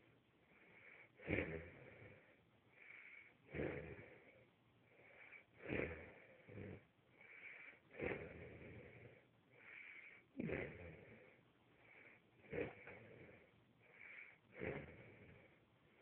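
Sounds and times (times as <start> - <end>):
loud snoring: 0.8 - 4.4, 5.1 - 15.5
high breathy sound: 7.1 - 16.0.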